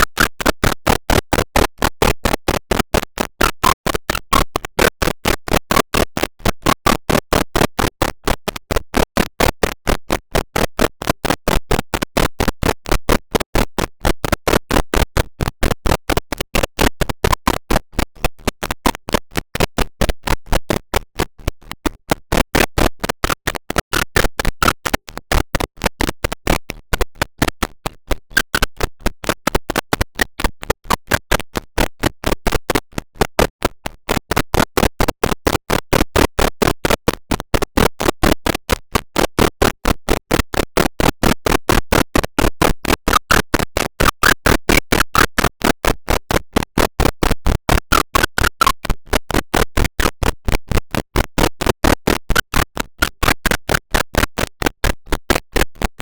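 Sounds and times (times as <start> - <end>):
rapid sharp clicks: 38.0 - 55.9.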